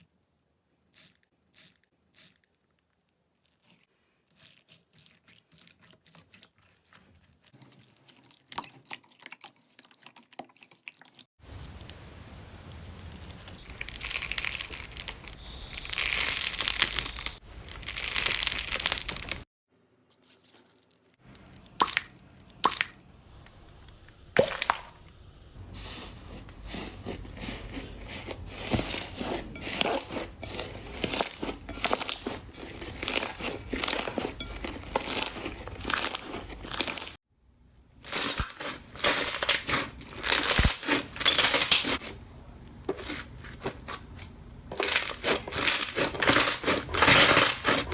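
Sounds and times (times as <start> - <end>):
crunchy crackling: 11.4 - 19.5, 38.1 - 42.0, 42.7 - 47.9
slime squeezed by hand: 13.6 - 19.4.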